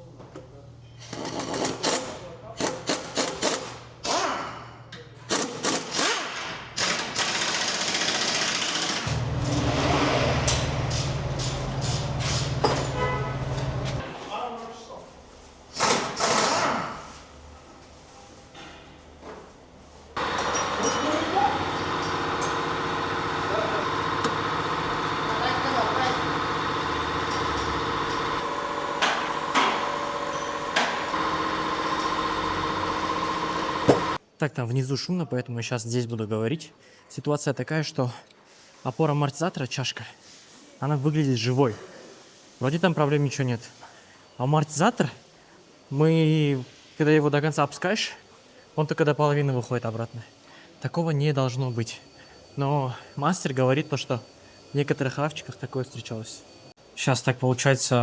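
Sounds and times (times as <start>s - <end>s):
low rapid mechanical rattle: 7.2s - 14.0s
steady machinery hum: 9.1s - 14.0s.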